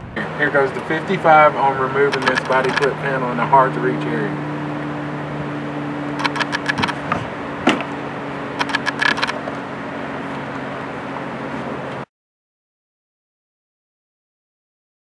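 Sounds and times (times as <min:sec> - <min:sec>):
steady low hum: 0:00.0 - 0:12.0
pliers clicking and rattling: 0:02.2 - 0:02.9, 0:06.2 - 0:07.8, 0:08.6 - 0:09.4.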